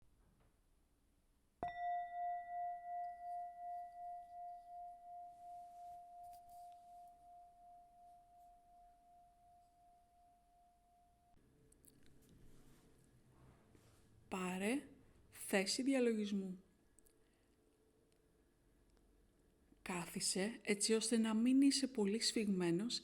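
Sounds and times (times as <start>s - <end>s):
meditation bell ringing: 1.6s - 11.4s.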